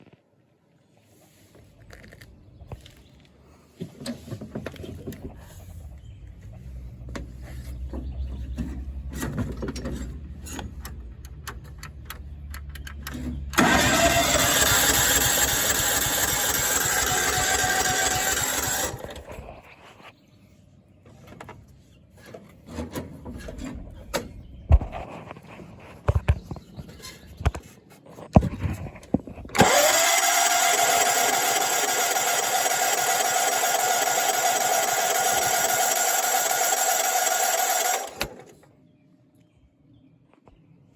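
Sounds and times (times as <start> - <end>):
engine starter motor cranking: 12.8 - 19.5, 29.5 - 38.7.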